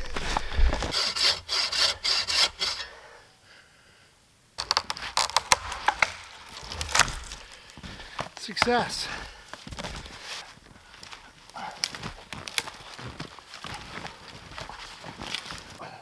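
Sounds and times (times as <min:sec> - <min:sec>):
hand saw cutting wood: 0:00.0 - 0:03.0, 0:04.6 - 0:07.8
wood cracking and snapping: 0:04.6 - 0:15.8.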